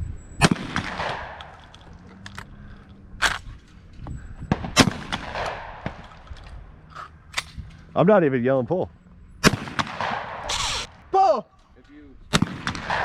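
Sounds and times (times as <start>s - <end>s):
shotgun shots: 0.4s - 2.0s, 4.5s - 6.4s, 9.4s - 10.9s, 12.3s - 13.0s.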